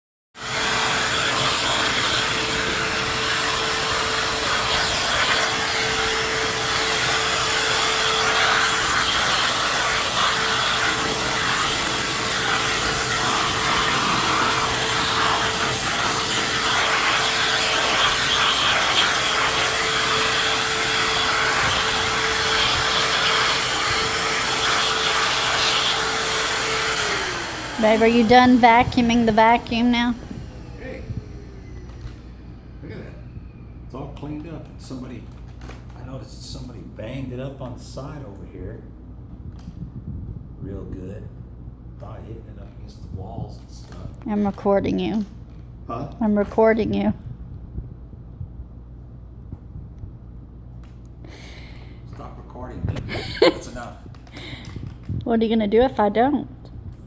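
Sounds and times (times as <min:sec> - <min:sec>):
vacuum cleaner running: 0:00.4 - 0:35.1, 0:51.3 - 0:56.2.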